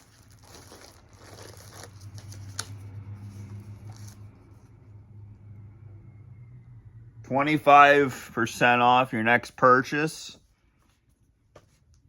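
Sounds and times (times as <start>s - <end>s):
plastic packaging crinkling: 0.0s - 2.8s
steady low hum: 1.4s - 9.8s.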